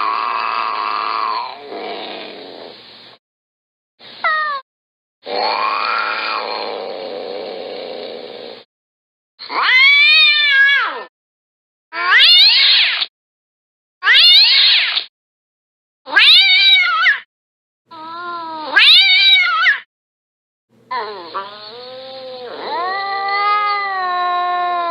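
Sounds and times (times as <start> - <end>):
cat meows and yowls: 9.4 - 11.1, 12.0 - 13.1, 14.0 - 15.1, 16.1 - 17.2, 17.9 - 19.8, 20.9 - 24.9.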